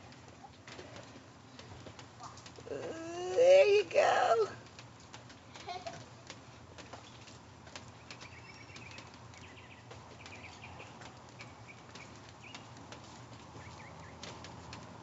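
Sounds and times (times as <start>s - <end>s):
light rain hiss: 0.0s - 15.0s
bird chirping: 8.0s - 12.8s, 13.5s - 14.3s.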